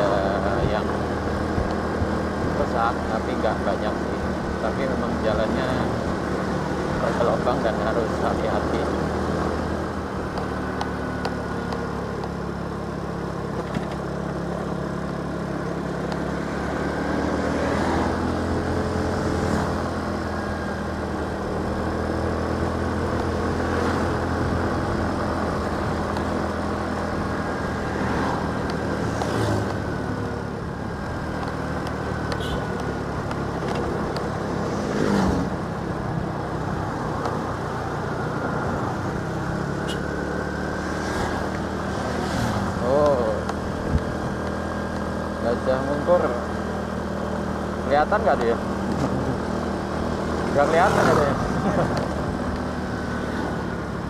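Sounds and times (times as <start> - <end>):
motorcycle engine cruising: 0.0 - 54.0.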